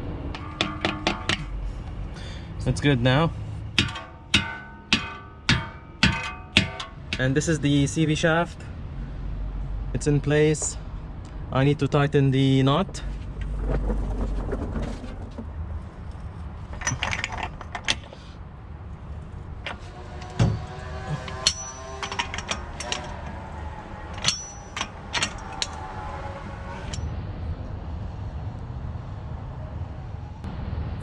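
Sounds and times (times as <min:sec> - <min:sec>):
hand tools clicking on metal: 0:00.4 - 0:01.6, 0:03.8 - 0:07.3, 0:16.7 - 0:18.2, 0:19.6 - 0:26.0
low hum: 0:18.7 - 0:28.6.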